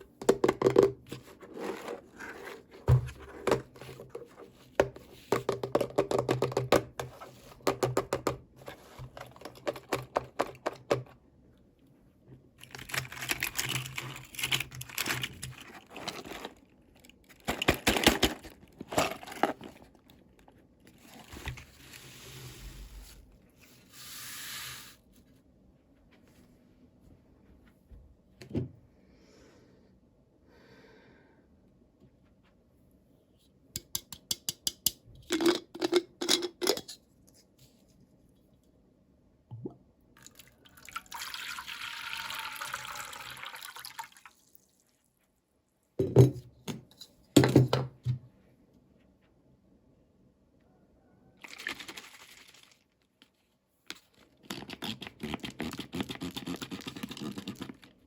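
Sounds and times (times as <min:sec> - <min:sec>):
packaging rustling: 0:12.6 - 0:20.1.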